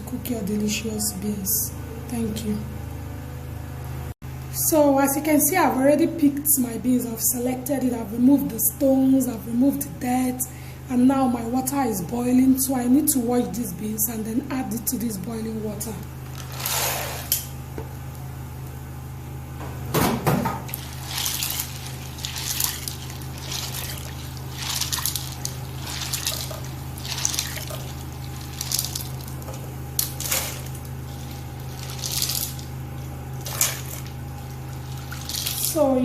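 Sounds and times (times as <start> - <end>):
steady low hum: 0.0 - 36.0
beans swished in bowl of water: 20.8 - 29.4, 30.0 - 32.7, 34.7 - 35.7.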